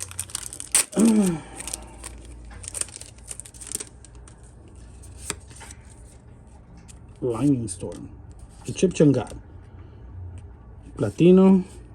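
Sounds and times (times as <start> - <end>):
foil wrapper crinkling: 0.0 - 5.7
trading cards handled: 0.0 - 9.4.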